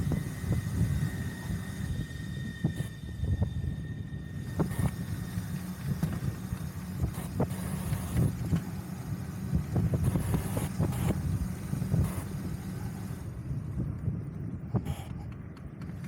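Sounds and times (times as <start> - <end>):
wind rumbling on microphone: 0.0 - 16.0
vehicle clicks and rattles: 4.4 - 16.0.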